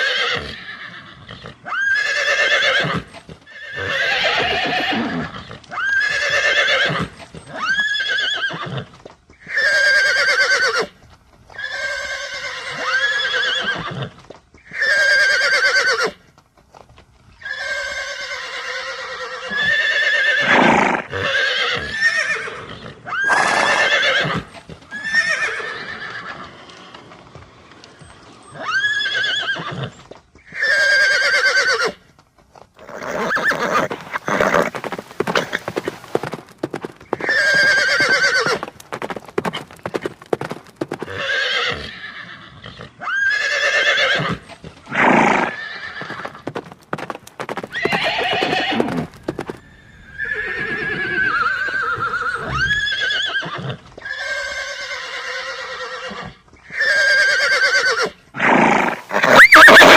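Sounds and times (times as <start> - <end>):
horse neighing: 0.0 - 8.9, 17.4 - 26.9, 28.6 - 30.0, 32.8 - 59.9
hooves clip-clopping: 8.7 - 12.4, 13.9 - 14.8, 16.1 - 17.4, 23.4 - 41.9, 44.3 - 52.8.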